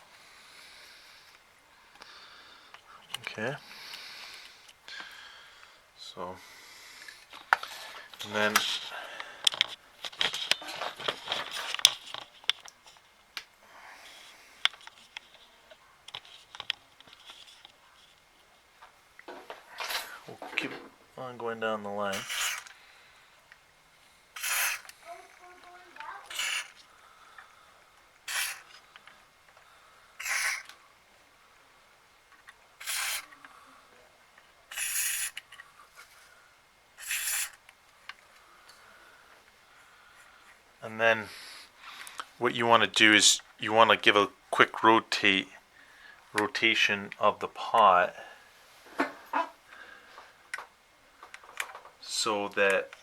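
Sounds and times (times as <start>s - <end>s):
spray can hissing bursts: 22.1s - 22.7s, 24.4s - 25.0s, 26.2s - 26.8s, 28.2s - 28.8s, 30.2s - 30.7s, 32.8s - 33.3s, 34.7s - 35.4s, 37.0s - 37.6s.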